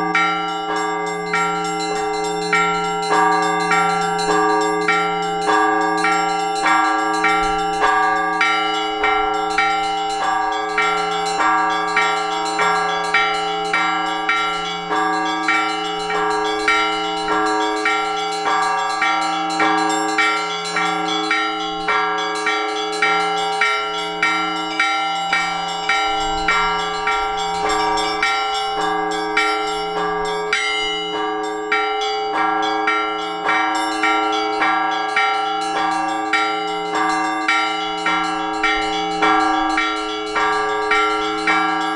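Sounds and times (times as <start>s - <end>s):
hum of large bells: 0.0s - 41.9s
small church bells ringing: 0.0s - 41.9s.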